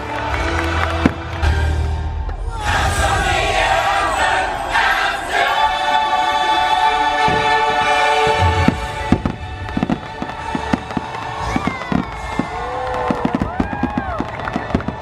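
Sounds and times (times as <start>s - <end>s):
choral music: 0.0s - 15.0s
fireworks bangs and crackling: 7.2s - 15.0s.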